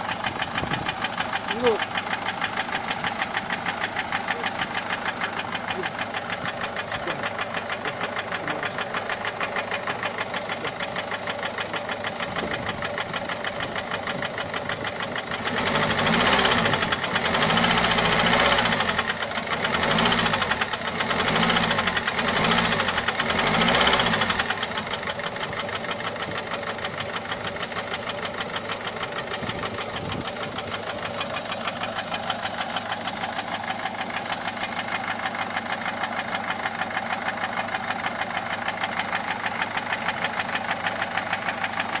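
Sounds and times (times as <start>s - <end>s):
diesel engine idling with knocking: 0.0s - 42.0s
engine revving: 14.9s - 25.7s.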